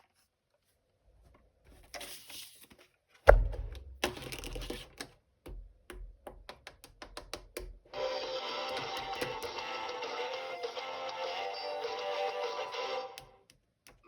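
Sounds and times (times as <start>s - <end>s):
sharp clicks and taps: 5.5s - 7.8s.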